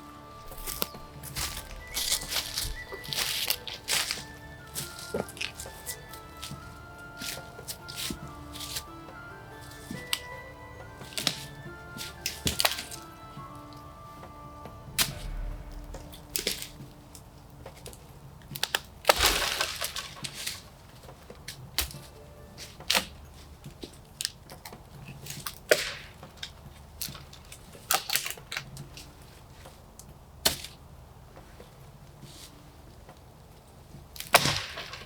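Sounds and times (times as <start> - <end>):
brush crunching: 0.0 - 31.0
sticks snapping and cracking: 0.4 - 13.9, 18.6 - 28.8, 34.2 - 35.0.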